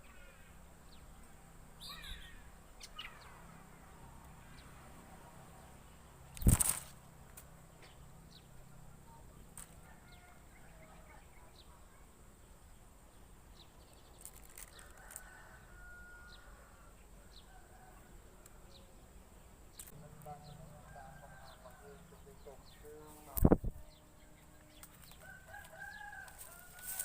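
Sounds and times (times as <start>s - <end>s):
bird chirps: 1.8s - 3.4s
lower pitched bird calls: 1.8s - 3.4s.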